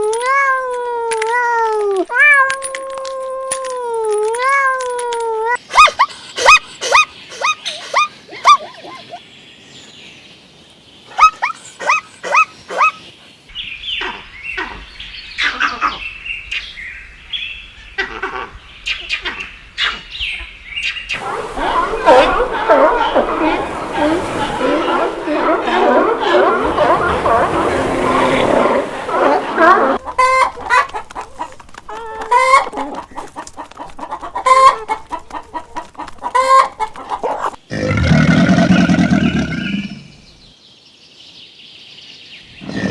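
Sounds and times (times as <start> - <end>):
chirping and squawking animals: 4.8 - 9.4, 11.0 - 40.5
chickens clucking: 21.1 - 37.6
chicken drawn-out calls: 21.1 - 40.1.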